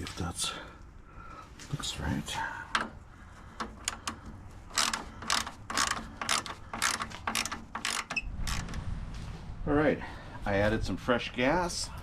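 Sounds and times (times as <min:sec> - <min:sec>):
rasping mechanical strokes: 0:03.6 - 0:08.9.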